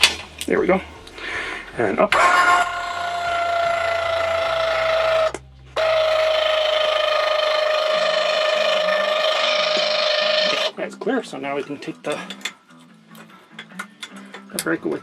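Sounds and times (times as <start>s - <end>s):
electric jack motor whining: 0.0s - 10.8s.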